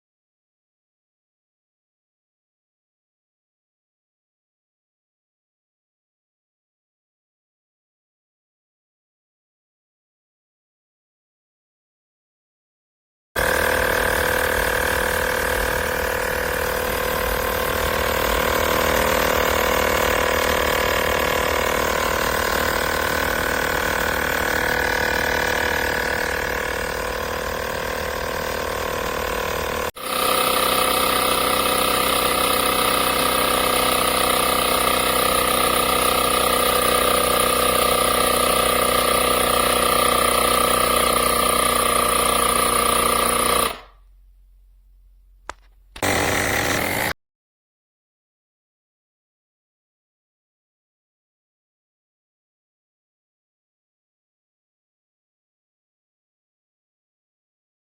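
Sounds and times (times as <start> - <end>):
electric air compressor running: 13.4 - 44.0, 46.0 - 47.2.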